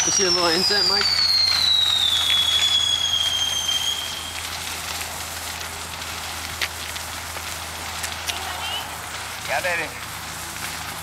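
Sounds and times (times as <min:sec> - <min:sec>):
firework shrill whistle: 0:00.0 - 0:04.7
firework crackles: 0:00.0 - 0:11.0.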